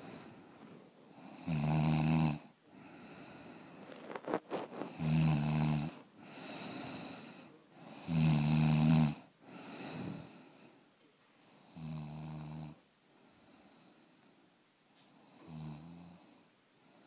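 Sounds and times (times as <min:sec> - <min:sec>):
soft breathing: 0:00.0 - 0:01.4, 0:02.7 - 0:08.1, 0:09.4 - 0:11.7, 0:13.1 - 0:15.5
loud low buzzing snores: 0:01.2 - 0:02.5, 0:04.9 - 0:07.1, 0:07.9 - 0:09.2, 0:11.7 - 0:12.8, 0:15.4 - 0:16.3.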